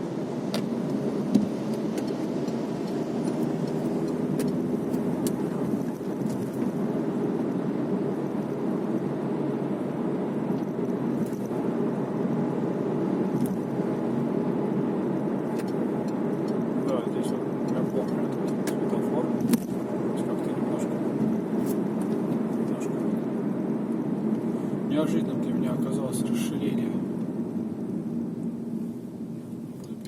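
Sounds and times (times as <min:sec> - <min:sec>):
car engine and tyre rumble: 0:00.0 - 0:30.0
light ticks: 0:01.7 - 0:04.6, 0:15.6 - 0:18.9.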